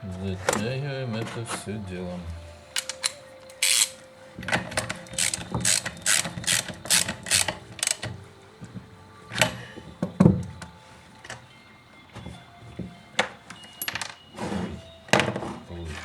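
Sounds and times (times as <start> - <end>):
hand ratchet clicking: 2.8 - 8.2.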